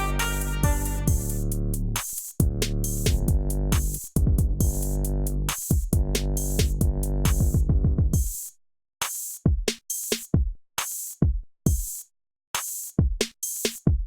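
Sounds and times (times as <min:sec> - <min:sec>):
drum-machine beat: 0:00.0 - 0:14.0.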